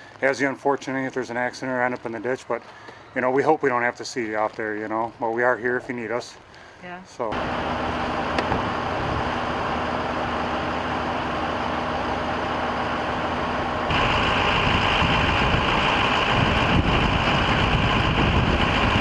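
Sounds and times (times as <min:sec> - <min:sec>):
vehicle engine running: 0:07.3 - 0:19.0
rushing noise: 0:07.4 - 0:19.0.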